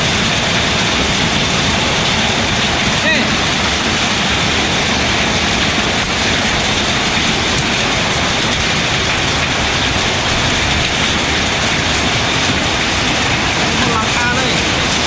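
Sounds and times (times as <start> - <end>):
hail and rain falling hard: 0.0 - 15.0.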